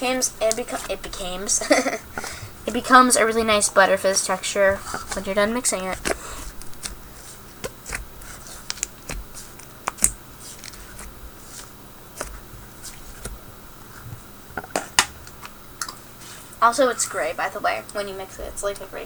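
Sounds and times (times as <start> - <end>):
slime squished by hand: 5.8 - 13.4.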